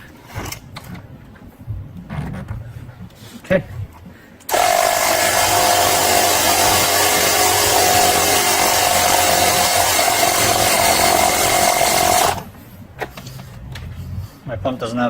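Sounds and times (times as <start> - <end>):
electric air pump whining: 4.5 - 12.5.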